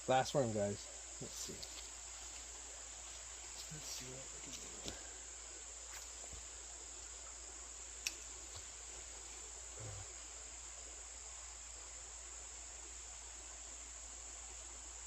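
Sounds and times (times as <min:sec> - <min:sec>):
insects chirring: 0:00.0 - 0:15.0
faint ticks: 0:01.4 - 0:05.1, 0:07.9 - 0:10.0.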